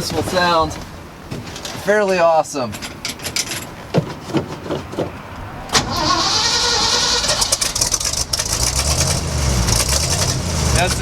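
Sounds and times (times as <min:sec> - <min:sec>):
truck engine exhaust rumble: 0:05.4 - 0:11.0
engine starter whining: 0:05.5 - 0:08.9.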